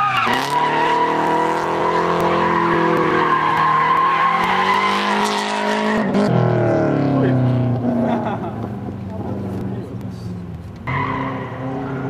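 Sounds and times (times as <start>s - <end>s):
tyres squealing: 0.0s - 6.1s
engine at steady revs: 4.4s - 10.7s.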